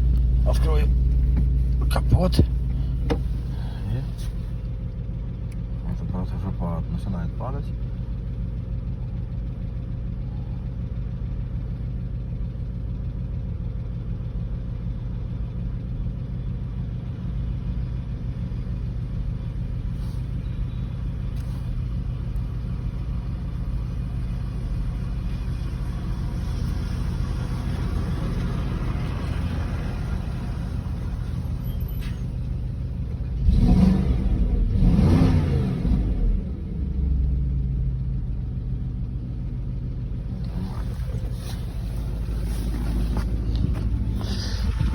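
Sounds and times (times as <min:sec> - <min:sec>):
car engine idling: 0:00.0 - 0:44.9
rough engine noise burst: 0:40.2 - 0:44.9.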